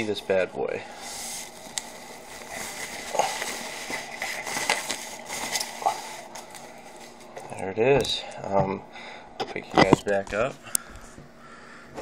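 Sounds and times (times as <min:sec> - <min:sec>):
packaging rustling and crackling: 0:01.2 - 0:07.6.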